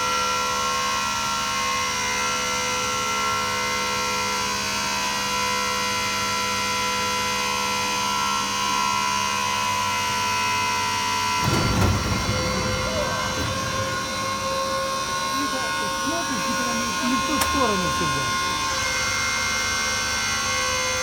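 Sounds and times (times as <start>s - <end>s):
aircraft systems electric whine: 11.2s - 21.0s.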